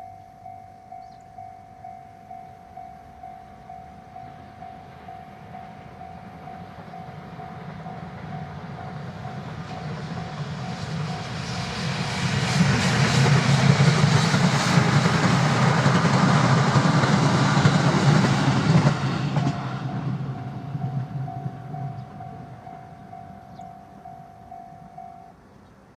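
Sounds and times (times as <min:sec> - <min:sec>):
level crossing warning bell: 0:00.0 - 0:09.6, 0:18.8 - 0:25.5
train rumbling past: 0:00.0 - 0:25.9.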